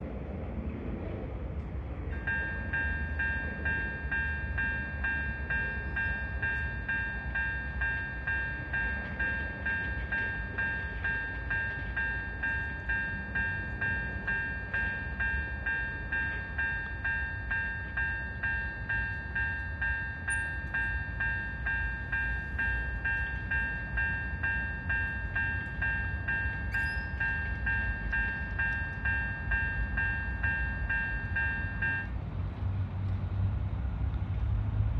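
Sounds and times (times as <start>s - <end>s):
level crossing warning bell: 2.1s - 32.2s.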